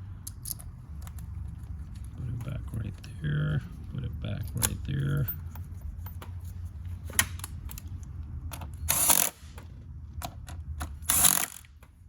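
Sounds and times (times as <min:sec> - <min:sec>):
ratchet rasping bursts: 0:08.9 - 0:09.4, 0:11.0 - 0:11.7
metal ratchet clicks: 0:11.0 - 0:11.7.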